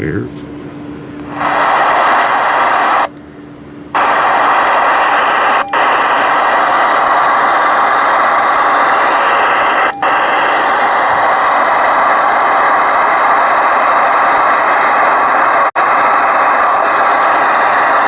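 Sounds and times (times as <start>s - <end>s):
radio static hiss: 1.2s - 3.1s, 4.0s - 18.0s
radio click: 4.0s - 13.7s.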